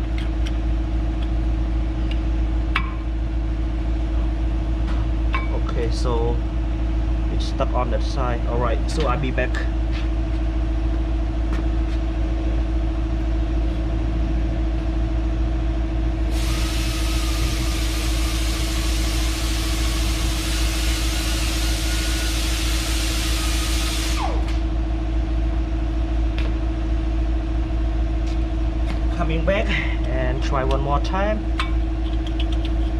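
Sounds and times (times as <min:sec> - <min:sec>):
steady low hum: 0:00.0 - 0:32.9
electric grinder whining: 0:16.3 - 0:24.6.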